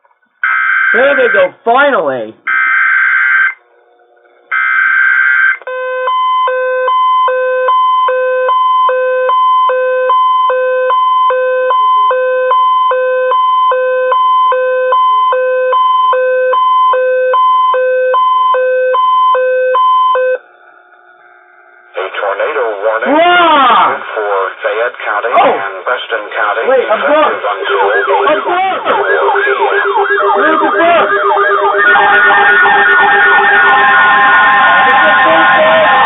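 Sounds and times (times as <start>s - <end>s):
buzzy header data tones: 0.4s - 24.0s, 26.4s - 36.0s
electronic two-tone alert signal: 2.5s - 21.9s.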